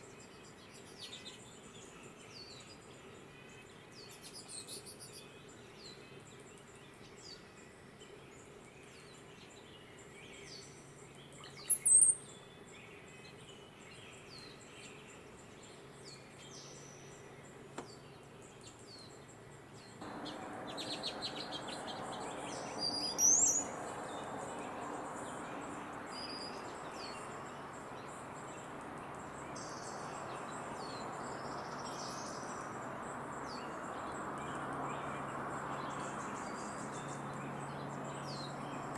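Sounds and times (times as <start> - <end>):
steady background hiss: 19.2 - 38.9
hummingbird high-pitched chirps: 20.1 - 32.5.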